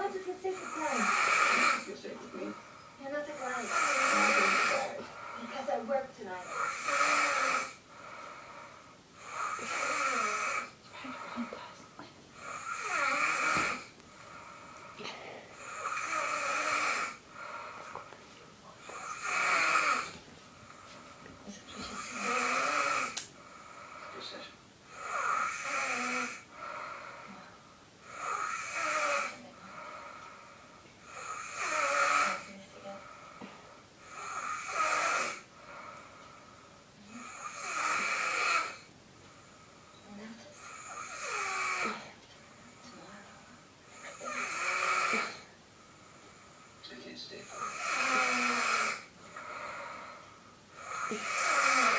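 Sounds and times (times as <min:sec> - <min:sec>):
person snoring: 0:00.0 - 0:02.6, 0:03.3 - 0:05.6, 0:06.4 - 0:11.6, 0:12.4 - 0:18.1, 0:18.8 - 0:20.2, 0:21.7 - 0:24.2, 0:24.9 - 0:30.3, 0:31.1 - 0:36.1, 0:37.1 - 0:38.9, 0:40.6 - 0:42.1, 0:43.9 - 0:45.5, 0:47.4 - 0:50.2, 0:50.8 - 0:51.9
quiet breathing: 0:00.0 - 0:51.9.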